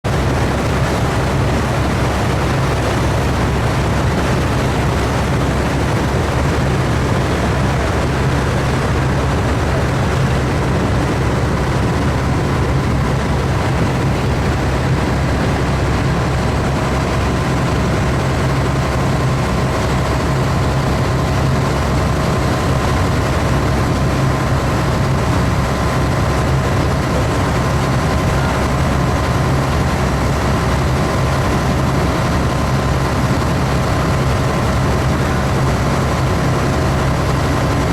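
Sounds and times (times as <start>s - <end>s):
engine droning: 0.0s - 37.9s.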